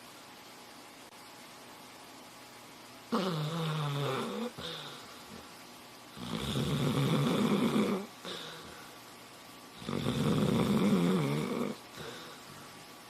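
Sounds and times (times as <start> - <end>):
dog snoring: 3.1 - 5.0, 6.2 - 8.8, 9.8 - 12.4.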